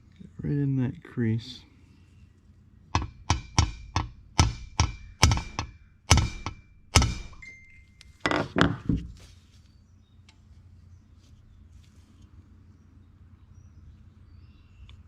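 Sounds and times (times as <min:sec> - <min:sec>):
hammer tapping metal punch: 0:03.0 - 0:09.1.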